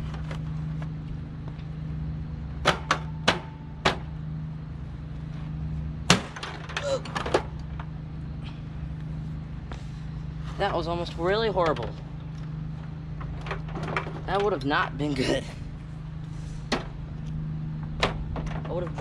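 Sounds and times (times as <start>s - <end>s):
steady low hum: 0.0s - 19.0s
knocks and clatters of casing: 6.1s - 7.9s, 12.8s - 14.6s, 17.8s - 19.0s.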